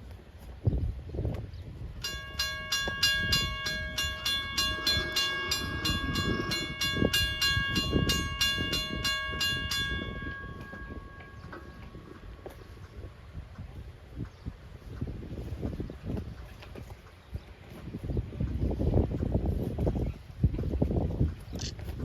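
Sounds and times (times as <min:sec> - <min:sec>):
crossing warning bell ringing: 0:02.0 - 0:12.8.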